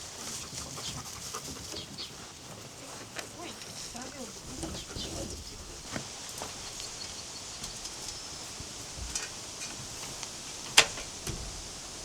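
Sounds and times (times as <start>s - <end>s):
faint bird chirps: 6.6s - 8.5s.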